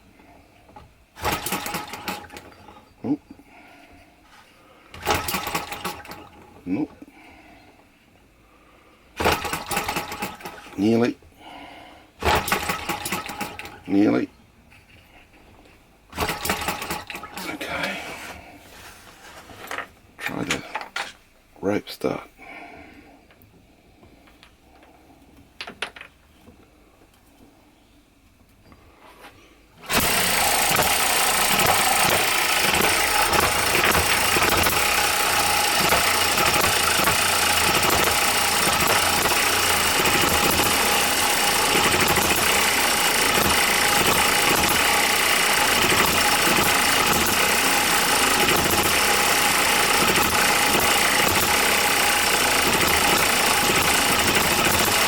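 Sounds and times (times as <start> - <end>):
small engine running: 1.2 - 2.4, 5.0 - 6.3, 9.2 - 10.7, 12.2 - 13.8, 16.2 - 18.0, 29.8 - 55.0.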